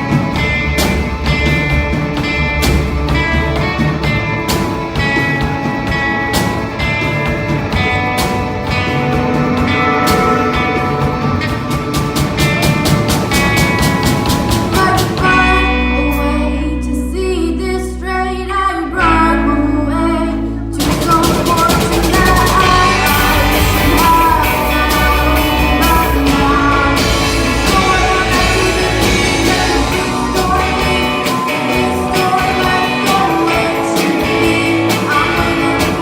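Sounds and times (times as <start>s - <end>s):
steady drum beat: 0.0s - 15.4s, 20.8s - 36.0s
indie rock song: 0.0s - 36.0s
sung vocals: 14.4s - 36.0s.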